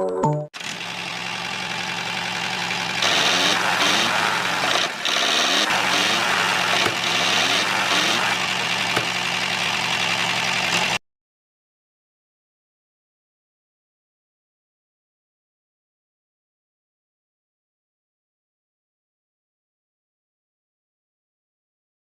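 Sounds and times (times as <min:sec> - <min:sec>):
small motor humming: 0:00.6 - 0:11.0.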